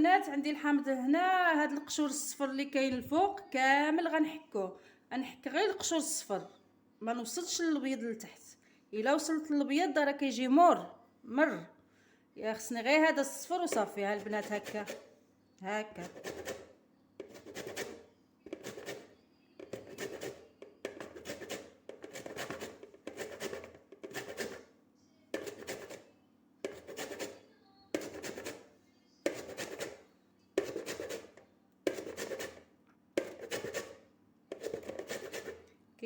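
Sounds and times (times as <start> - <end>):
hand grater rasping: 16.0 - 24.6, 25.4 - 26.0, 26.7 - 27.4, 28.0 - 28.6, 29.3 - 30.0, 30.6 - 32.6, 33.2 - 35.6.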